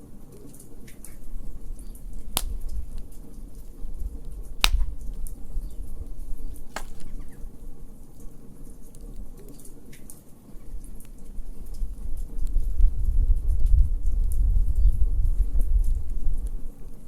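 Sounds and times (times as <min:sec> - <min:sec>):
wood fire crackling: 0:00.0 - 0:13.0
low rumble of flames: 0:00.1 - 0:17.0
sharp fire pops: 0:01.8 - 0:07.6.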